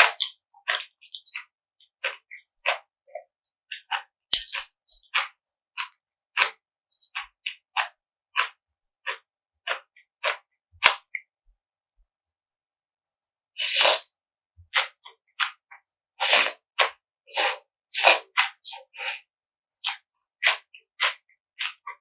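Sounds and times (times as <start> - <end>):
noodle slurping: 13.6 - 14.1, 16.2 - 16.6, 17.3 - 18.2.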